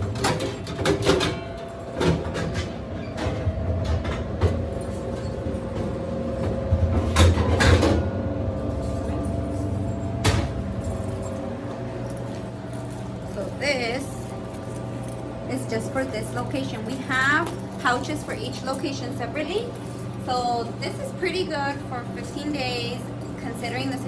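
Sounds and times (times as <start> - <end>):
knocks and rattles of metal parts: 0.0 - 8.1
steady machine hum: 0.0 - 24.0.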